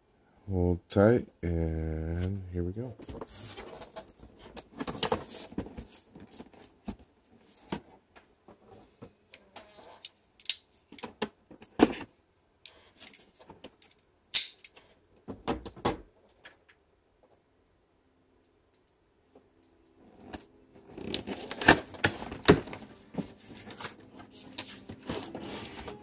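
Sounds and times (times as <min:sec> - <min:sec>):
packaging rustling and scraping: 0:03.0 - 0:06.8, 0:20.2 - 0:26.0.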